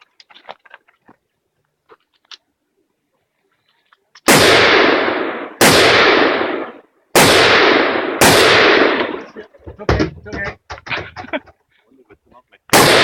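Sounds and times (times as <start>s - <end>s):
rifle shots with echo: 4.3s - 9.3s, 12.7s - 13.0s.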